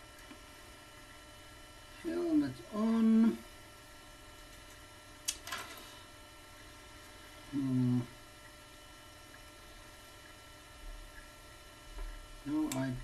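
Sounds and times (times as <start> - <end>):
faint electrical hum: 0.0 - 13.0
man humming: 7.5 - 8.2.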